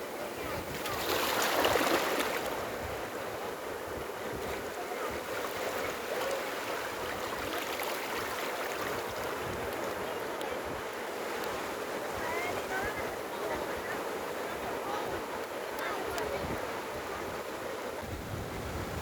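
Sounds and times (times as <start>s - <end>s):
waves hissing on beach: 0.0s - 19.0s.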